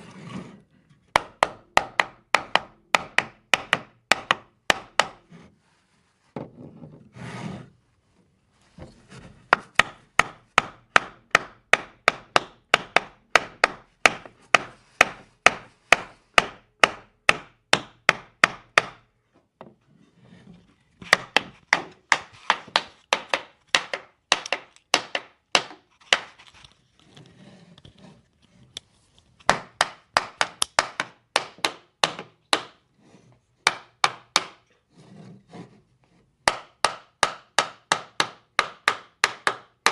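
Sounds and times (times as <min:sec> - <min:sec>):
hammer knocking on wood: 0:21.1 - 0:26.3, 0:29.5 - 0:32.8, 0:33.7 - 0:34.6.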